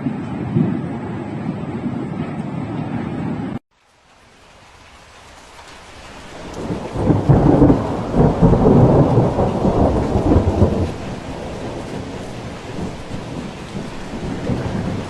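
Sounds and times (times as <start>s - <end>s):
thunder rumbling: 0.0s - 3.6s, 6.2s - 15.0s
steady rain: 3.7s - 15.0s.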